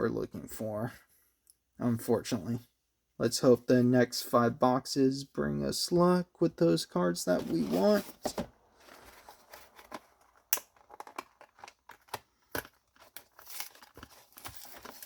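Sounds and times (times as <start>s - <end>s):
cardboard packaging crinkling and tearing: 7.5s - 15.0s.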